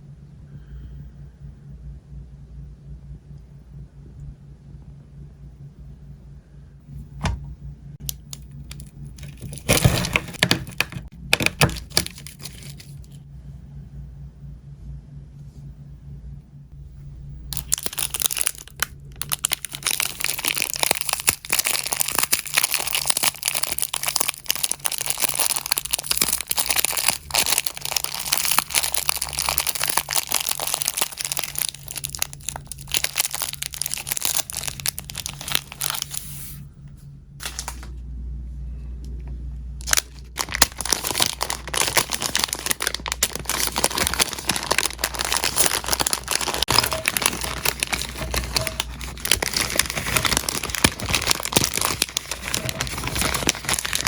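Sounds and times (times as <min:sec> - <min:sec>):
dry material crinkling: 0:08.0 - 0:13.2, 0:17.5 - 0:36.4, 0:39.8 - 0:54.0.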